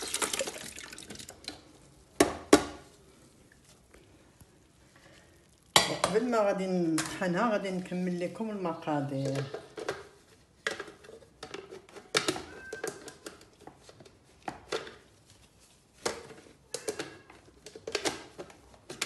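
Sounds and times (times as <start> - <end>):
kitchen items clicking on counter: 9.1 - 15.0, 16.0 - 19.0.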